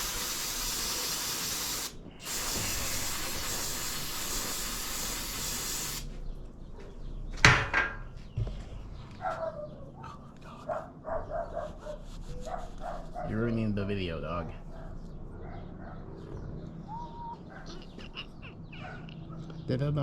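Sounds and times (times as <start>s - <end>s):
spray can hissing: 0.0s - 6.2s.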